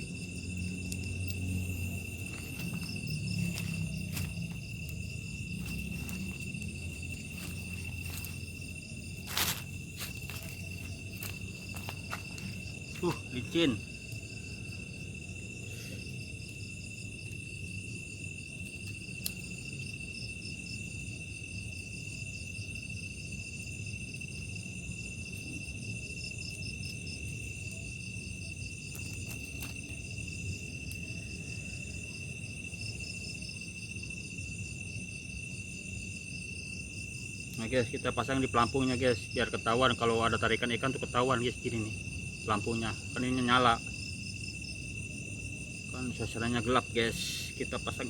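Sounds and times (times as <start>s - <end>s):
faint low rumble: 0.0s - 13.0s
pulsing insect chirps: 0.0s - 22.7s
insects trilling: 0.0s - 48.0s.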